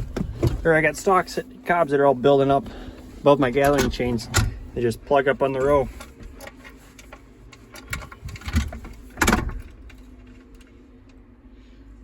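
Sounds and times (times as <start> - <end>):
low machine hum: 0.0 - 12.0.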